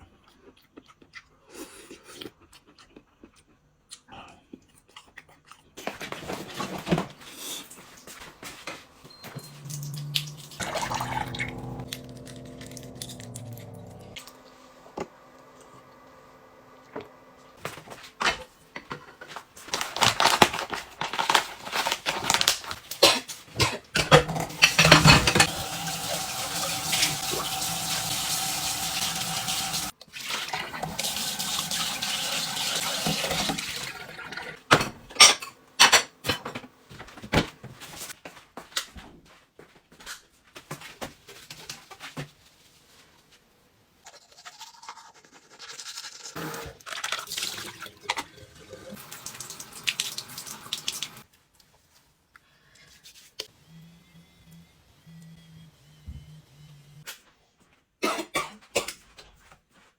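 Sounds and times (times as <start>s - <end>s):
tap water running into sink: 9.6s - 12.1s, 24.4s - 34.4s, 46.4s - 51.2s.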